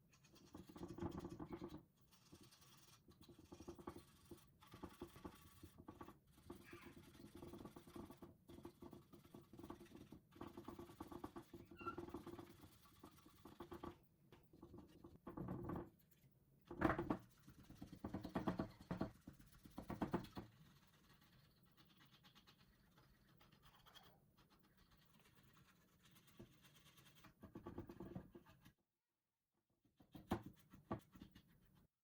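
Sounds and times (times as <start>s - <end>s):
dry scratching and rubbing: 0.2s - 13.9s, 19.1s - 28.8s.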